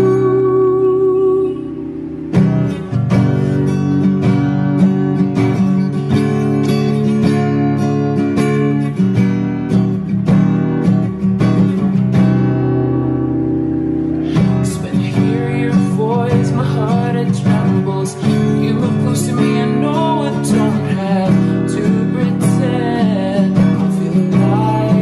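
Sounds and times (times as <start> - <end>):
person singing: 0.0 - 3.1, 14.0 - 25.0
pop ballad with acoustic guitar: 0.0 - 25.0.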